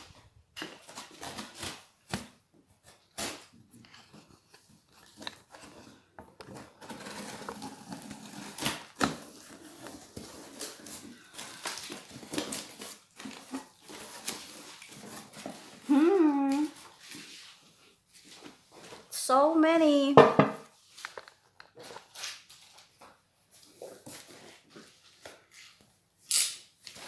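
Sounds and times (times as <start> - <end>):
packing tape tearing: 0.6 - 3.6, 6.5 - 16.9, 26.2 - 27.0
cardboard rustling: 0.6 - 19.1.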